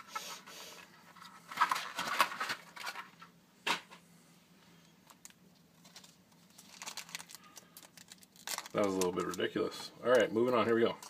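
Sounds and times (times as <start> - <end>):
wrapper and cards rustling: 5.0 - 9.7
sharp tearing of wrapper: 5.2 - 9.5.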